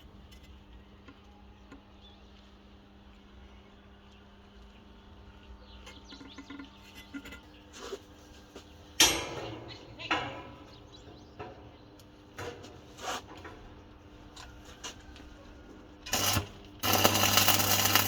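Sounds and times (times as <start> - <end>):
loud ringing metal clang: 9.0 - 9.6.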